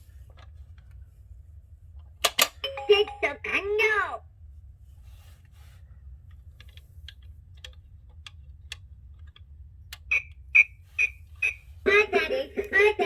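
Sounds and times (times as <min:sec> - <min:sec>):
alarm clock music: 0:02.6 - 0:03.9.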